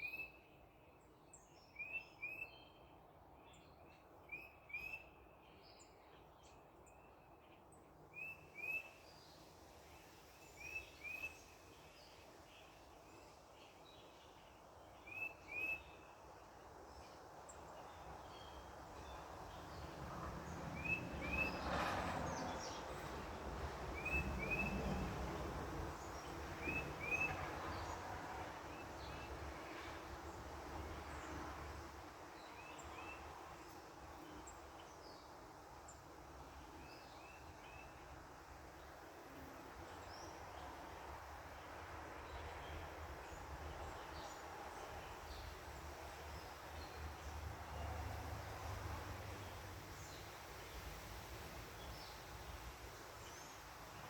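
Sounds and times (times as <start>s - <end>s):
vehicle passing: 19.7s - 28.7s.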